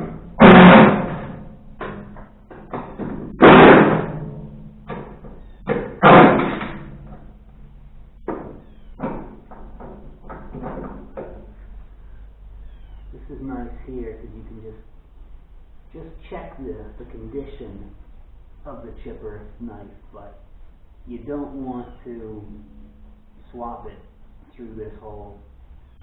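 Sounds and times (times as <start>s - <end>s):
metal knocks and clatter: 0.0s - 11.8s
loud metallic bangs: 0.0s - 14.3s, 14.9s - 26.0s.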